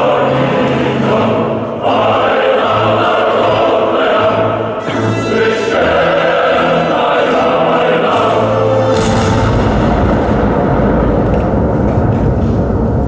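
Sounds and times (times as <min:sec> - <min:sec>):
choir singing held notes: 0:00.0 - 0:11.0
low rumble: 0:08.8 - 0:13.0.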